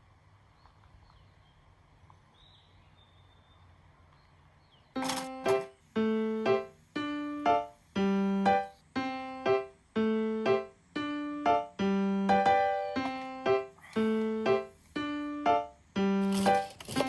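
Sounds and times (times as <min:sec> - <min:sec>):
simple keyboard tune: 0:05.0 - 0:17.0.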